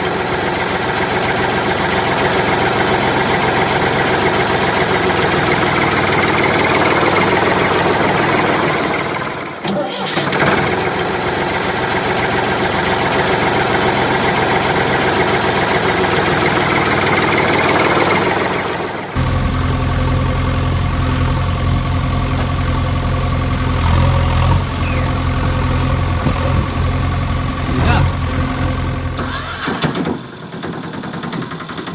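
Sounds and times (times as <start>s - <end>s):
rough engine running: 0.0s - 9.6s, 10.4s - 31.9s
low engine idle: 19.2s - 29.7s.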